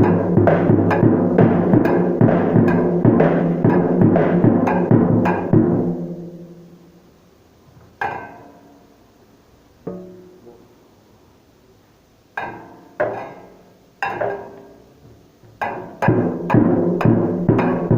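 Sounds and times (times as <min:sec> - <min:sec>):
drum hits with ringing tone: 0:00.0 - 0:06.8, 0:15.6 - 0:17.9.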